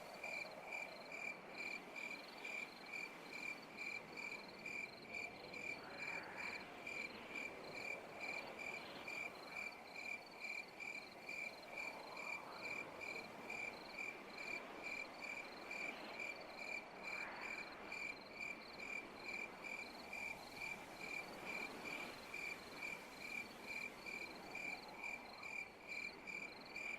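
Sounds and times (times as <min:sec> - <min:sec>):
crickets chirping: 0:00.0 - 0:26.9.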